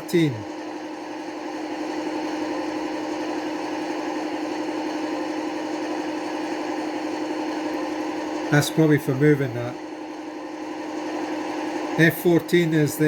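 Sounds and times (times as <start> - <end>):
diesel engine idling through small speaker: 0.0 - 0.6.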